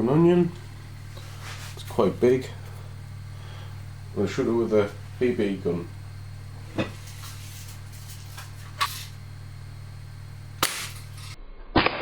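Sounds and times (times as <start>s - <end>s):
steady low hum: 0.0s - 11.4s
bb rifle shot crack: 10.6s - 11.3s.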